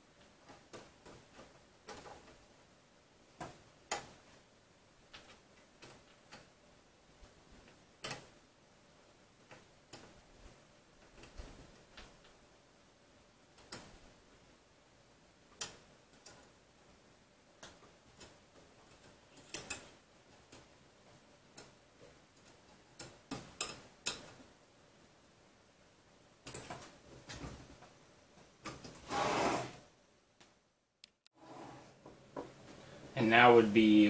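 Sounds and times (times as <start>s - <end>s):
small tools clicking and tapping: 17.6s - 20.7s, 22.4s - 24.4s.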